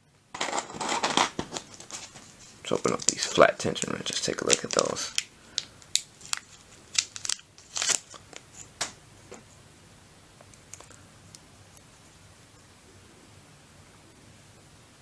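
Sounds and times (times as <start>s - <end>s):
packaging crinkling and rustling: 0.4s - 9.4s.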